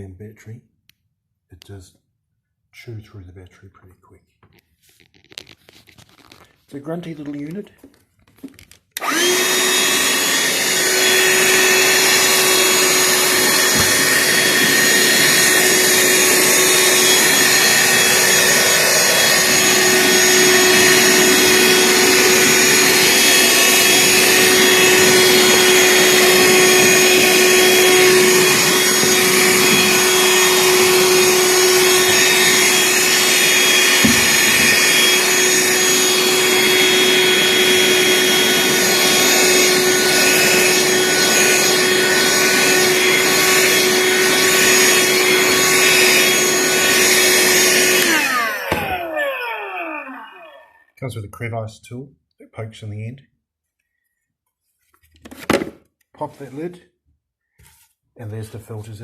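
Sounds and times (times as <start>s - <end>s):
handheld vacuum running: 8.4s - 50.9s.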